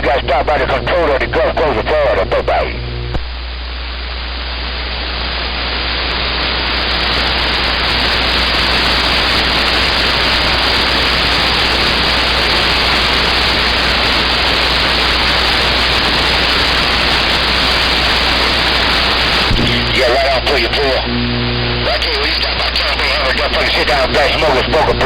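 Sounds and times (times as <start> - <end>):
low steady hum: 0.0 - 8.0, 19.1 - 25.0
radio static hiss: 0.0 - 25.0.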